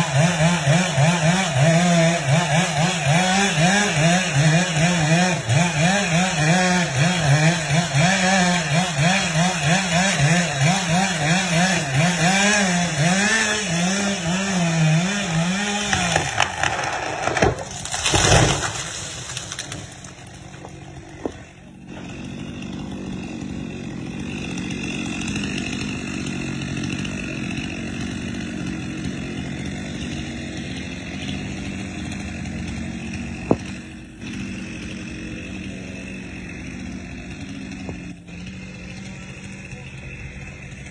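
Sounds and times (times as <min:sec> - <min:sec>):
chainsaw running: 0:00.0 - 0:40.9.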